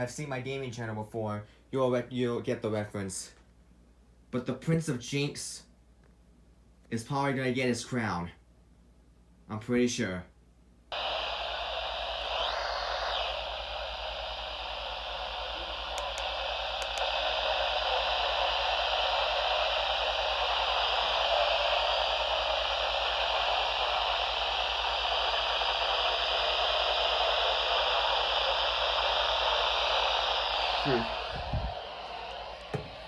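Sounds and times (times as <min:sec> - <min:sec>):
radio static hiss: 0:10.9 - 0:33.0.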